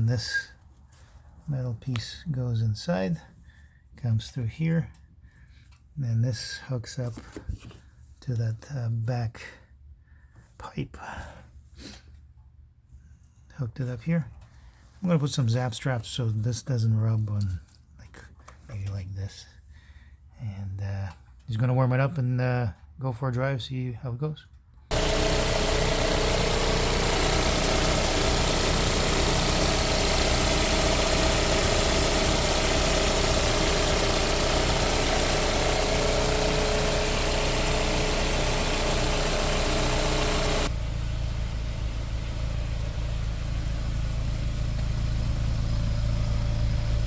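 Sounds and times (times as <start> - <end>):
car engine idling: 24.9 - 47.0.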